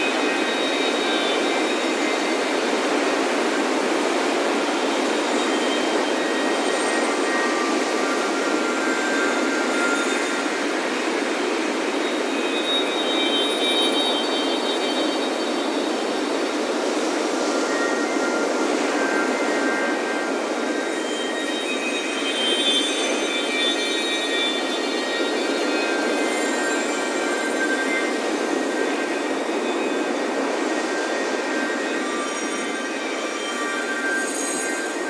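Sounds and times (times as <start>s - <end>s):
ocean surf washing: 0.0s - 35.0s
metal wind chimes ringing: 17.5s - 35.0s.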